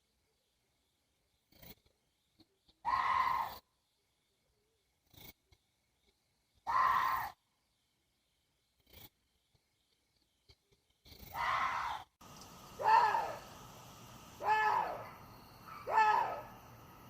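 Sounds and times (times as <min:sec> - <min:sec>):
deer wailing cries: 0:14.4 - 0:16.5.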